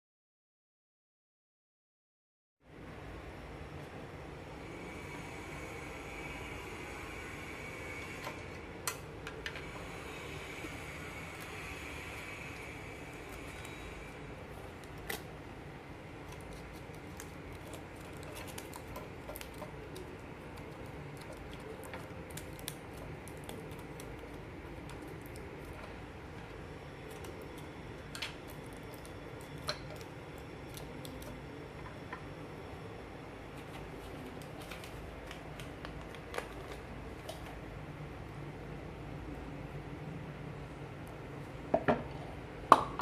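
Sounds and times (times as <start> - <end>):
steady low hum: 2.6 - 43.0.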